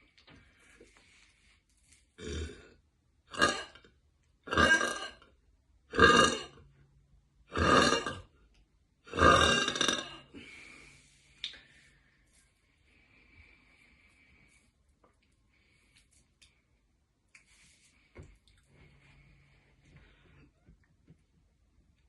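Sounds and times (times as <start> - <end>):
woman burping: 2.2 - 2.7, 3.3 - 3.8, 4.5 - 5.3, 5.9 - 6.6, 7.5 - 8.3, 9.1 - 10.4.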